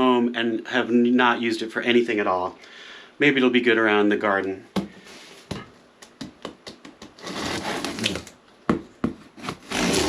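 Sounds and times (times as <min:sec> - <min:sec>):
scraping rustles of cardboard: 0:07.2 - 0:08.3, 0:09.4 - 0:10.0.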